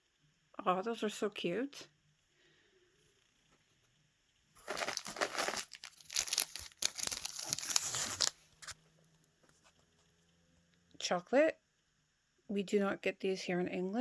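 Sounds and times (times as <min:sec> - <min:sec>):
packaging crinkling and rustling: 0:04.6 - 0:08.8.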